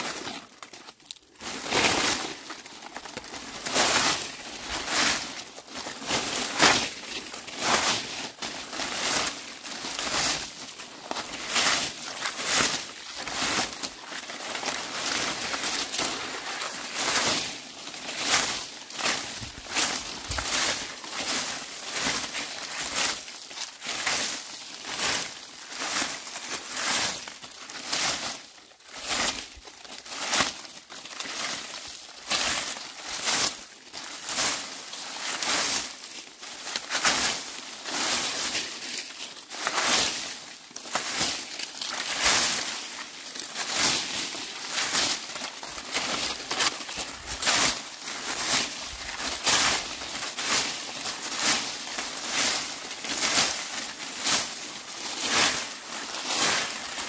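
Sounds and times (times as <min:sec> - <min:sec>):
broom sweeping dry leaves: 0:00.0 - 0:57.0.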